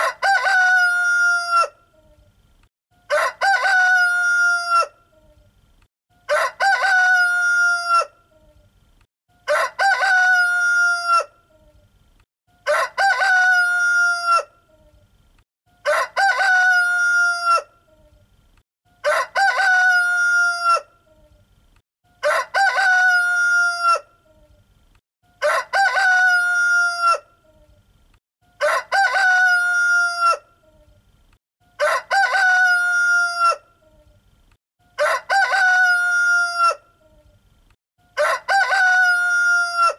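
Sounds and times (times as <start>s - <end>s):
rooster crowing: 0.0s - 1.8s, 3.1s - 5.0s, 6.2s - 8.2s, 9.4s - 11.4s, 12.6s - 14.5s, 15.8s - 17.7s, 19.0s - 20.9s, 22.2s - 24.1s, 25.4s - 27.3s, 28.6s - 30.5s, 31.7s - 33.7s, 35.0s - 36.9s, 38.1s - 39.9s.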